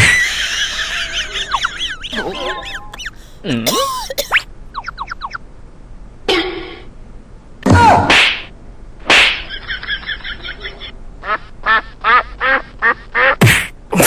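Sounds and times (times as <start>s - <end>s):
duck quacking: 11.2s - 13.6s.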